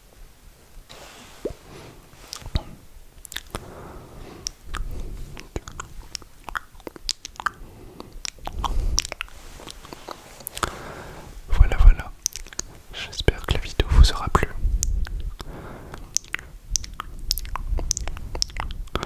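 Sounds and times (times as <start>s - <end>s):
breathy puffs: 0.9s - 19.0s
tongue clicks: 2.2s - 3.7s, 4.4s - 10.7s, 11.6s - 19.0s
wet lip smacks: 2.2s - 3.7s, 4.4s - 10.7s, 11.8s - 19.0s.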